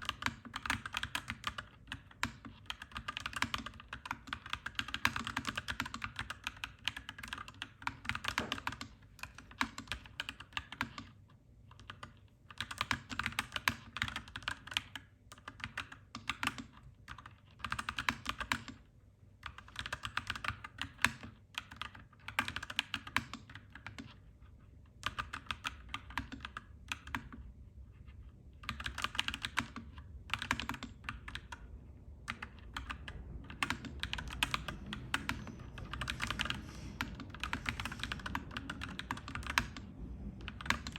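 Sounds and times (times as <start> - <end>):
mechanical keyboard typing: 0.0 - 18.8, 19.4 - 24.2, 25.0 - 27.5, 28.6 - 40.9
low steady rumble: 27.4 - 40.9.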